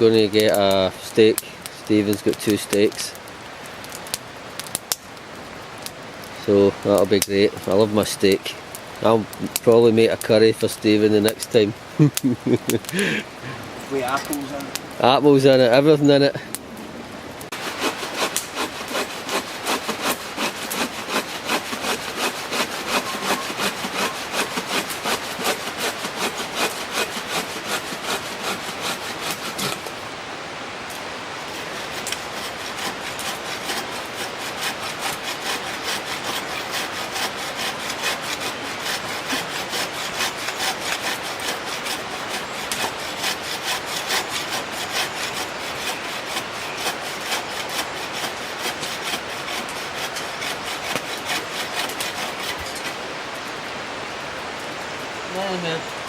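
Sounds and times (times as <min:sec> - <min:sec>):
hand saw cutting a log: 0:17.5 - 0:30.0, 0:31.5 - 0:53.0.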